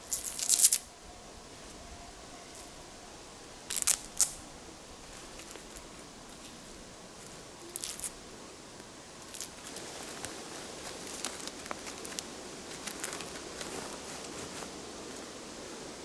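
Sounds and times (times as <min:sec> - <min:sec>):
twigs crackling and snapping: 0:00.0 - 0:00.9, 0:03.7 - 0:04.4, 0:05.0 - 0:08.2, 0:08.8 - 0:15.2
soft rustle: 0:00.0 - 0:02.9, 0:03.6 - 0:16.0.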